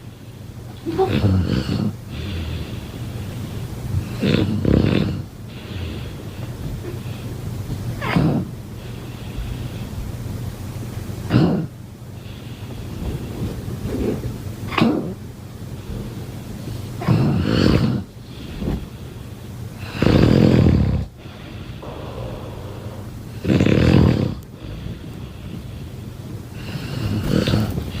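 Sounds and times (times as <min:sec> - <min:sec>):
cat snoring: 0:01.0 - 0:02.8, 0:04.0 - 0:06.1, 0:17.0 - 0:18.1, 0:19.8 - 0:25.4, 0:26.6 - 0:28.0.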